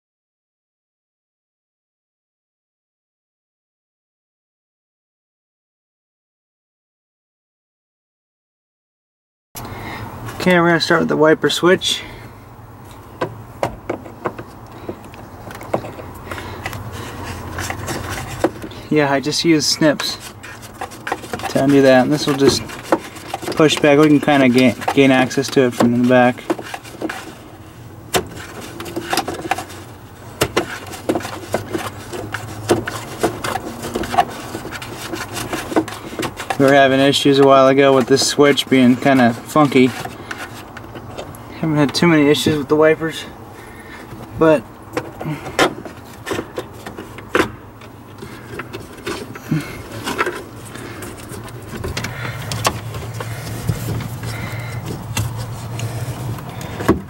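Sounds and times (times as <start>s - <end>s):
plastic dash parts clicking: 28.1s - 42.7s, 44.0s - 57.0s
hands and tools clicking and tapping: 44.9s - 57.0s.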